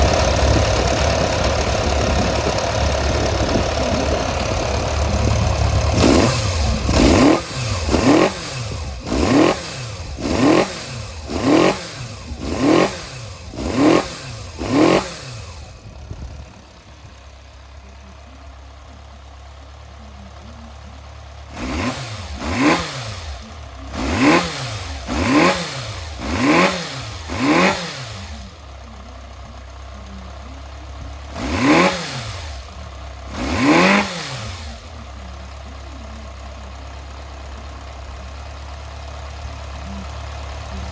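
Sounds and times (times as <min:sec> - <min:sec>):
engine revving blips: 0:00.0 - 0:15.7, 0:21.5 - 0:28.4, 0:31.3 - 0:32.7, 0:33.3 - 0:34.9
motorcycle engine idling: 0:00.0 - 0:40.9.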